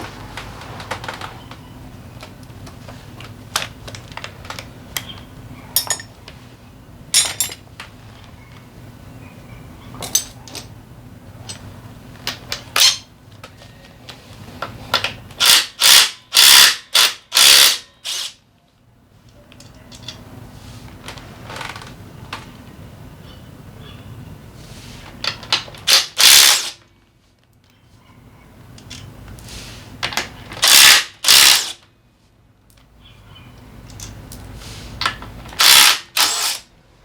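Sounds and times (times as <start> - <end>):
metal clicks and knocks of tools: 5.8 - 6.2, 7.2 - 7.6, 10.0 - 10.8, 19.3 - 20.2.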